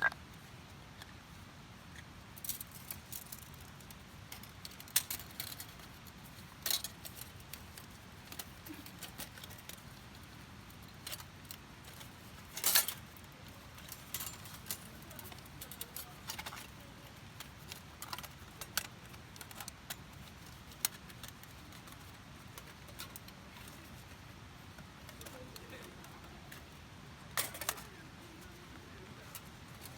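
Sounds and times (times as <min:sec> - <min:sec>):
small hard objects clicking: 0:02.0 - 0:24.2
objects clattering: 0:25.1 - 0:28.6.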